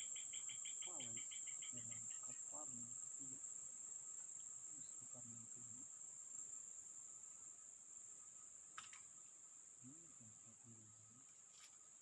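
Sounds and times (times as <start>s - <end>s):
rapid chirping call: 0.0s - 3.5s
insects droning: 0.0s - 12.0s.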